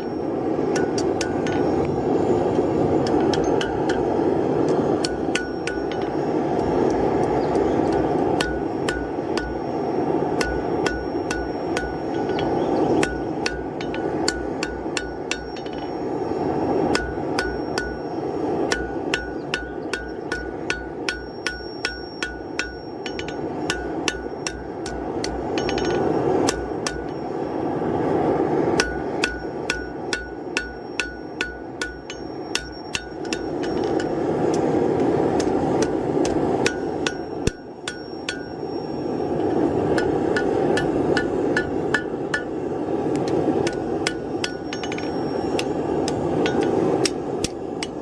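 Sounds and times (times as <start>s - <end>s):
hammer blows on hot steel: 0.0s - 48.0s
steady rushing noise: 0.0s - 48.0s.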